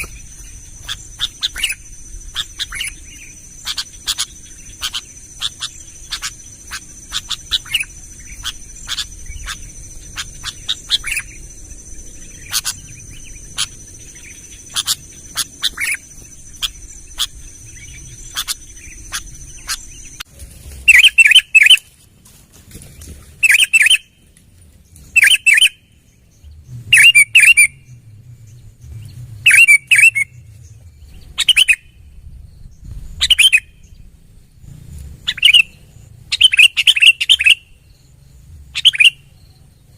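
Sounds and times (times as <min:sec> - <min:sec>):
bird calling loudly: 0:00.0 - 0:21.8, 0:23.4 - 0:24.2, 0:25.1 - 0:25.9, 0:26.9 - 0:28.0, 0:29.4 - 0:30.4, 0:31.2 - 0:32.0, 0:33.2 - 0:33.8, 0:35.2 - 0:37.7, 0:38.8 - 0:39.2
birds chirping: 0:00.0 - 0:39.9
steady high-pitched hiss: 0:00.0 - 0:39.9.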